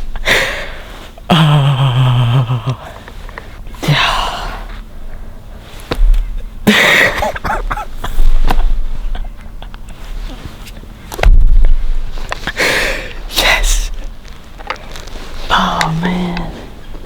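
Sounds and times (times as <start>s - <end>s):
handling noise: 4.9s - 17.0s
loud sudden thumps: 11.1s - 12.2s.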